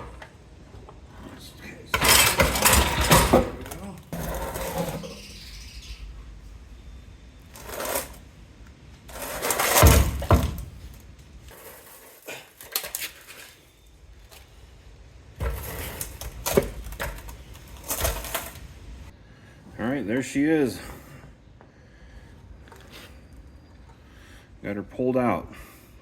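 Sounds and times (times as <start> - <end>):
metal clanks and scrapes: 1.9 - 5.4, 9.1 - 10.6.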